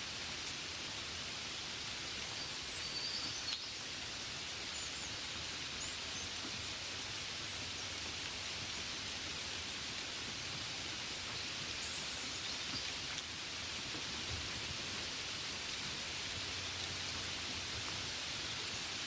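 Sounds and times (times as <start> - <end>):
steady rain hiss: 0.0 - 19.0.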